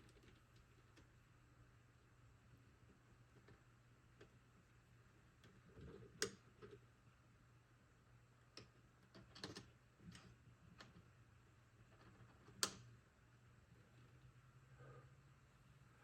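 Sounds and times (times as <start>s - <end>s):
faint low hum: 0.0s - 16.0s
sharp clicks and light knocks: 11.9s - 12.9s.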